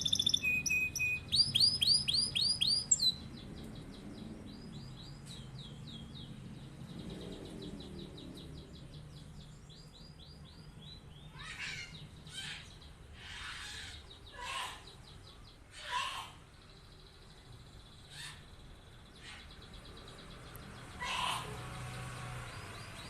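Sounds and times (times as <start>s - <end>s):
canary trilling: 0.0s - 3.3s, 20.9s - 22.1s.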